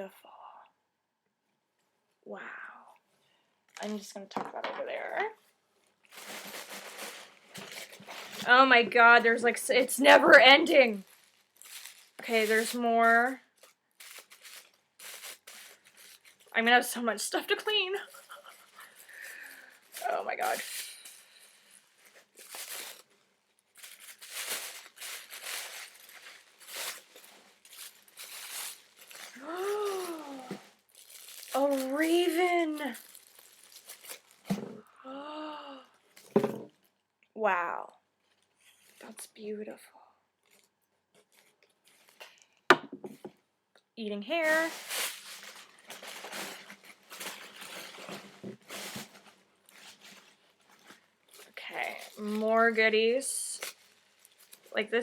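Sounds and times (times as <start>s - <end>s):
paper crinkling and tearing: 10.1s - 16.6s, 17.5s - 34.5s, 44.4s - 52.8s, 53.4s - 54.8s.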